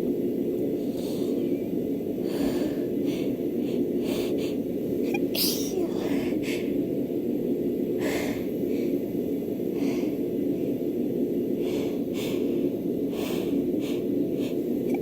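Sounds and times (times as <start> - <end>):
woman sneezing: 5.2 - 6.1
woman sniffing: 5.2 - 6.2.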